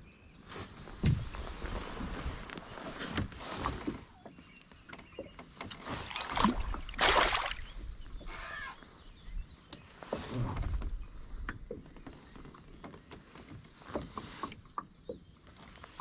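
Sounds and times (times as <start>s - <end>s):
water splashing and sloshing: 1.1s - 8.9s.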